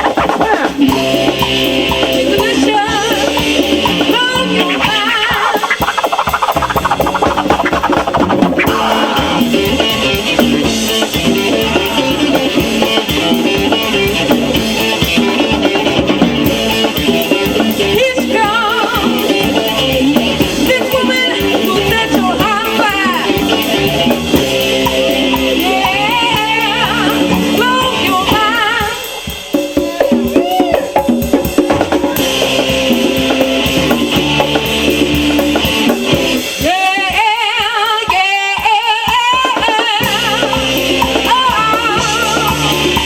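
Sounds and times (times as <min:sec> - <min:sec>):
person singing: 0:00.0 - 0:05.8, 0:08.4 - 0:14.0, 0:17.4 - 0:24.2, 0:25.0 - 0:31.1, 0:36.6 - 0:43.0
drum kit: 0:00.0 - 0:43.0
guitar playing: 0:00.9 - 0:28.5, 0:32.0 - 0:36.5.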